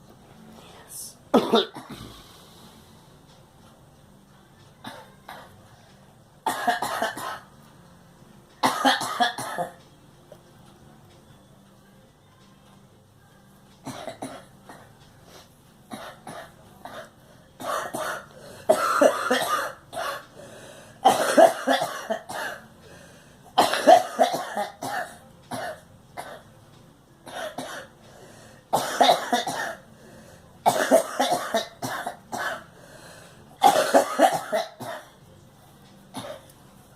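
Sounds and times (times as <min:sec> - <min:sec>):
girl coughing: 0:01.3 - 0:02.1, 0:15.9 - 0:20.2, 0:21.1 - 0:22.6, 0:23.6 - 0:26.4, 0:28.8 - 0:29.8, 0:30.7 - 0:32.6, 0:33.6 - 0:35.0.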